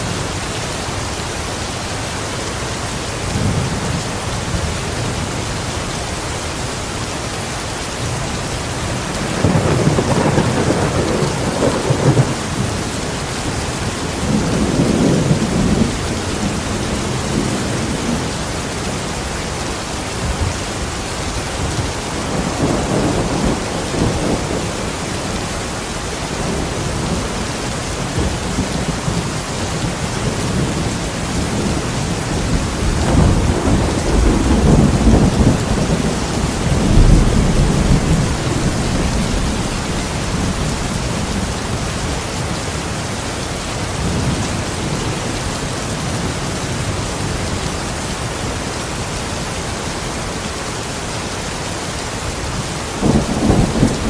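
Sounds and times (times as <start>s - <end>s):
steady rain: 0.0s - 54.0s
low rolling thunder: 8.8s - 18.6s, 21.4s - 25.7s, 26.3s - 42.6s, 52.9s - 54.0s.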